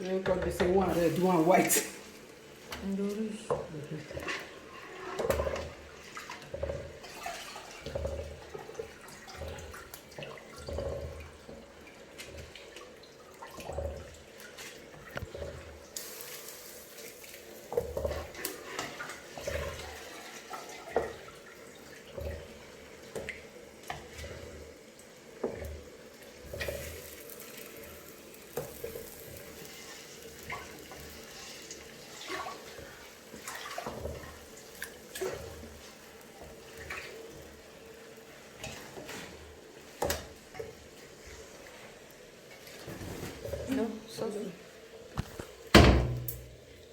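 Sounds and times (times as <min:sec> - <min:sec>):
tap water running into sink: 0:05.1 - 0:37.5, 0:45.1 - 0:46.9
kitchenware knocking and clinking: 0:45.8 - 0:46.6.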